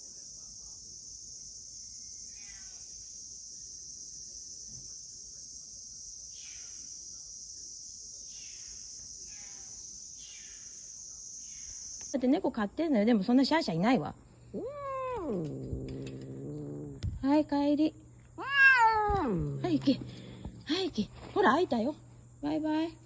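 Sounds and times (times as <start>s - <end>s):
high-pitched insect chorus: 0.0s - 12.2s, 19.1s - 23.0s.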